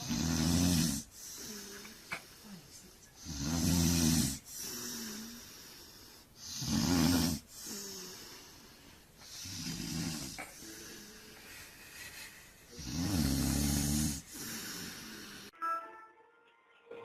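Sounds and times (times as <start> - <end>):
rattling snores: 0.0 - 2.4, 3.2 - 5.8, 6.4 - 11.3, 12.8 - 15.5.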